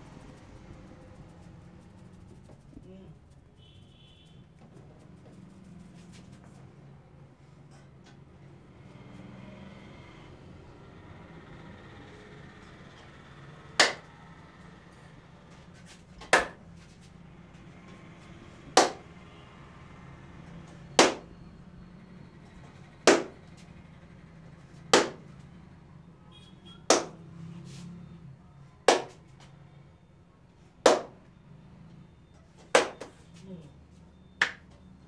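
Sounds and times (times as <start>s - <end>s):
sharp hand claps: 13.8s - 14.1s, 16.3s - 16.6s, 18.8s - 19.1s, 21.0s - 21.3s, 23.1s - 23.4s, 24.9s - 25.2s, 26.9s - 27.2s, 28.9s - 29.4s, 30.9s - 31.2s, 32.8s - 33.2s, 34.4s - 34.8s.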